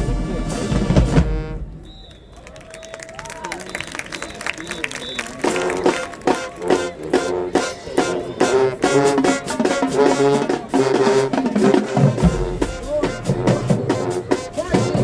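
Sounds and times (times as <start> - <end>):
marching band playing: 0.0 - 1.9, 5.0 - 15.0
deep bass drum hit: 12.2 - 14.0.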